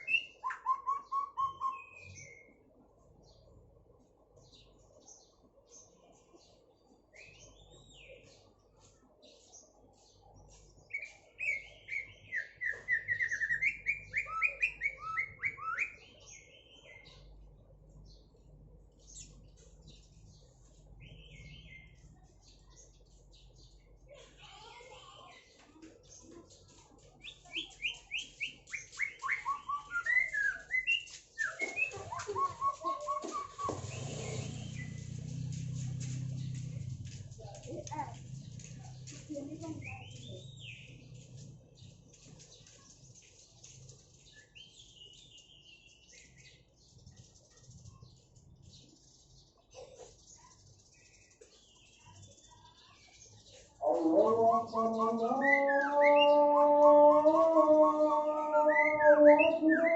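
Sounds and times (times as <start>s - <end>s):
bird singing whistled notes: 0.0s - 2.6s, 10.9s - 17.1s, 27.2s - 35.0s, 44.3s - 46.6s, 54.5s - 56.4s, 57.6s - 59.9s.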